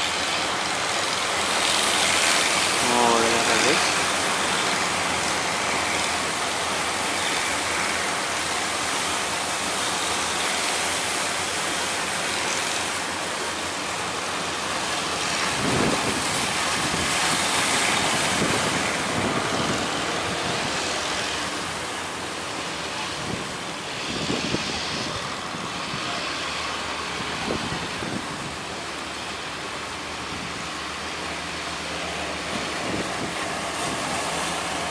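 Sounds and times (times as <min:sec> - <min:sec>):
big waves breaking: 0:00.0 - 0:34.9
wind on microphone: 0:15.1 - 0:22.3, 0:22.9 - 0:26.3, 0:26.9 - 0:28.8, 0:32.2 - 0:34.9.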